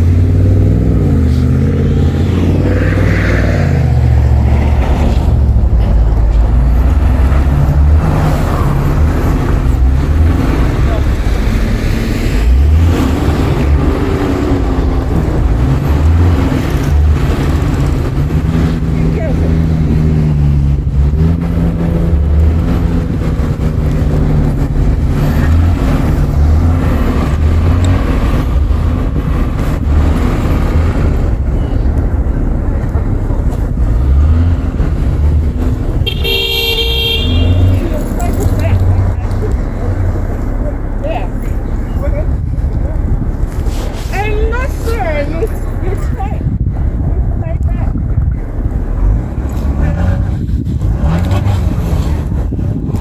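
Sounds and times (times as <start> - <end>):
vehicle engine rumbling: 0.0 - 53.0
wind on microphone: 0.0 - 53.0.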